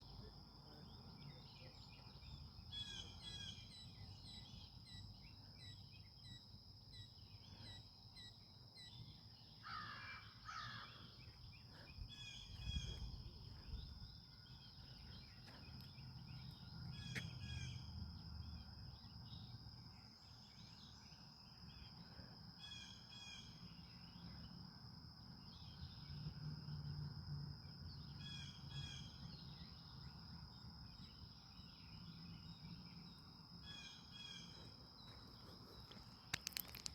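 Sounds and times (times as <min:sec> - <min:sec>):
birds chirping: 0:00.7 - 0:21.2.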